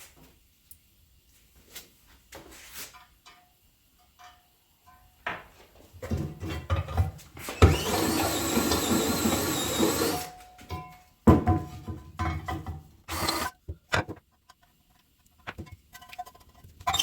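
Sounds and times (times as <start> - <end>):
power drill drilling: 7.5 - 10.3, 13.1 - 13.5.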